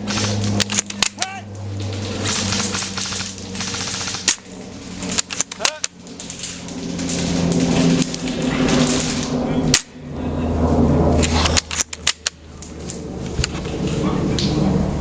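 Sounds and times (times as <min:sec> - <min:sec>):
airsoft gunfire clicks: 0:00.0 - 0:01.3, 0:01.9 - 0:04.5, 0:05.1 - 0:06.0
steady rustling: 0:00.0 - 0:09.4.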